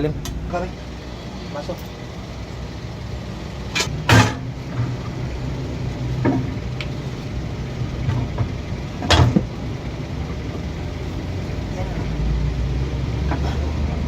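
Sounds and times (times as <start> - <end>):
steady low hum: 0.0 - 14.0
metal parts knocking and clanking: 3.8 - 5.0.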